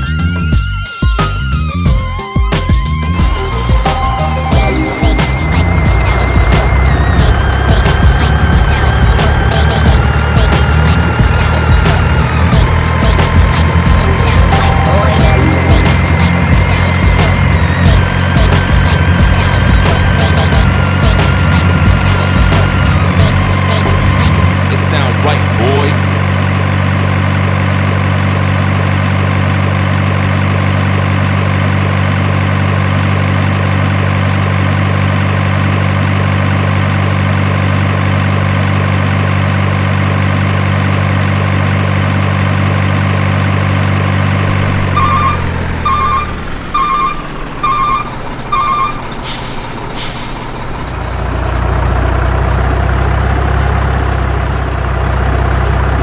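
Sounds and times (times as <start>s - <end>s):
truck engine running: 0.0s - 56.0s
reversing beeps: 44.8s - 51.2s
air brake hisses: 49.2s - 50.6s.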